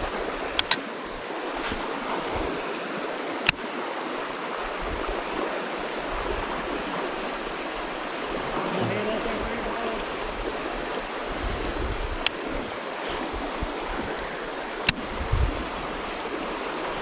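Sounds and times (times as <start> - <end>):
river water rushing: 0.0 - 17.0
sharp clicks: 0.5 - 0.9.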